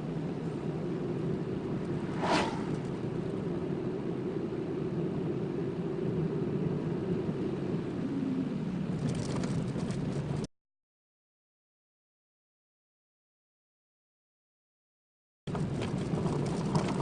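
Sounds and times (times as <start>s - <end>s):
car engine and road rumble: 0.0s - 10.5s, 15.5s - 17.0s.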